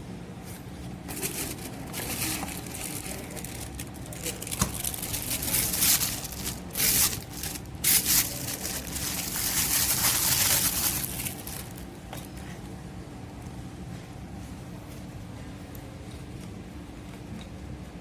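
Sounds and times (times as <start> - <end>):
packaging crinkling and rustling: 1.0 - 12.3.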